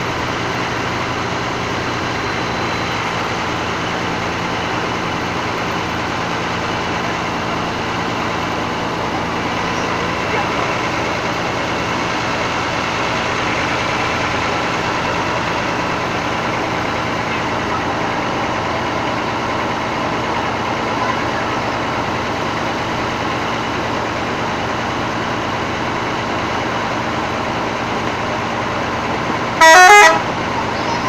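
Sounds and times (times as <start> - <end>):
bus engine idling: 0.0 - 31.0
murmur of voices: 6.9 - 12.2, 16.6 - 22.4, 30.2 - 31.0.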